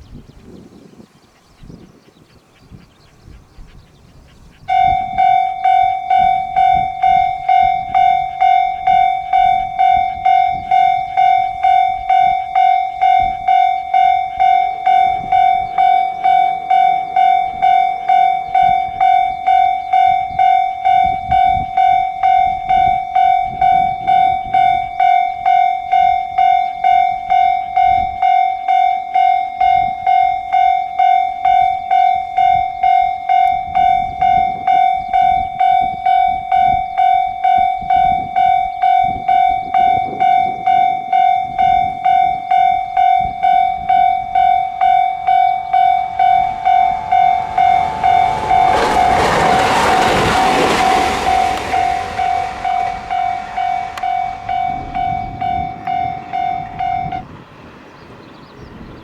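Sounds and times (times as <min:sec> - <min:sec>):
level crossing alarm bell: 0:04.7 - 0:57.4.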